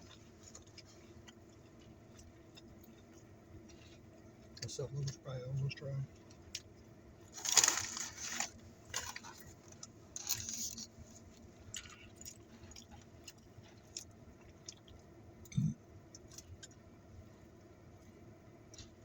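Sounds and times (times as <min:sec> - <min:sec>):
person chewing food: 0:00.0 - 0:05.2, 0:06.1 - 0:17.4, 0:18.0 - 0:19.0
mouth noise: 0:15.5 - 0:15.8.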